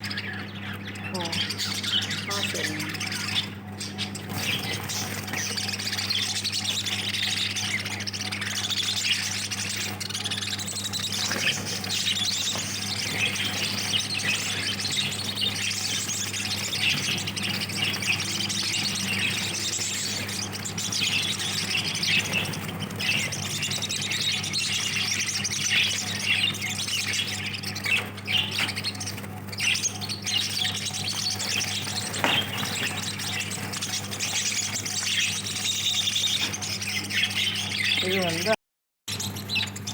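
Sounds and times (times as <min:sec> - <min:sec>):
lovebirds chirping and squawking: 0:00.0 - 0:39.9.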